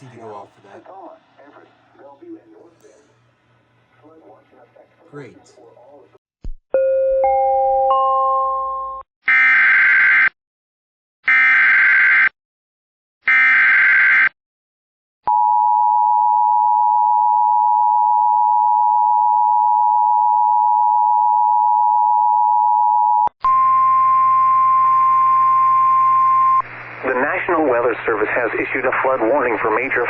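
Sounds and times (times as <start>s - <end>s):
radio hiss and hum: 26.4s - 30.0s.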